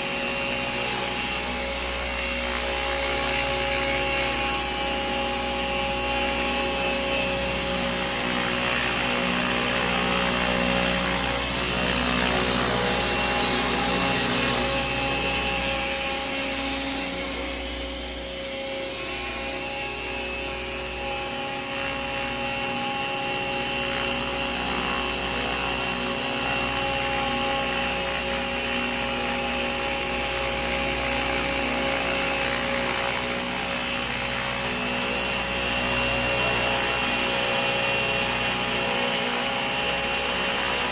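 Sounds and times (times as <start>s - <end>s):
model helicopter rotor whine: 0.0s - 40.9s.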